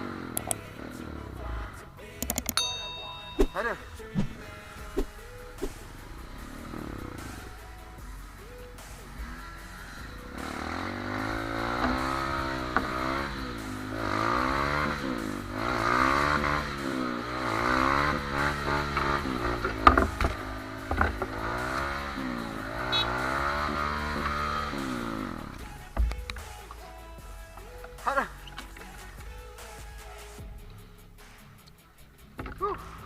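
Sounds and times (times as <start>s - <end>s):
motorbike engine revving: 0.0s - 2.5s, 3.6s - 25.9s.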